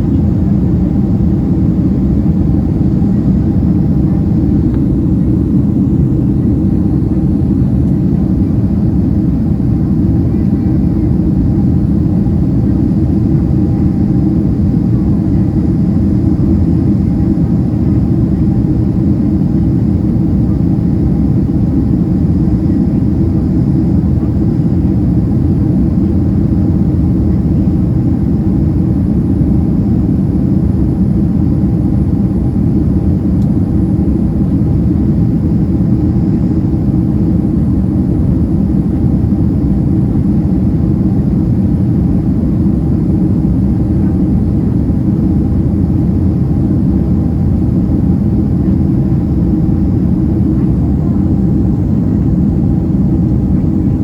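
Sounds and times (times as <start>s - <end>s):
faint steady hum: 0.0s - 54.0s
jet engine rumble: 0.0s - 54.0s.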